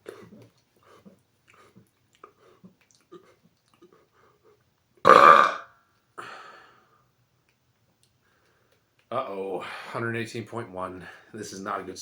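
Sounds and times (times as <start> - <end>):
man burping loudly: 5.1 - 5.7.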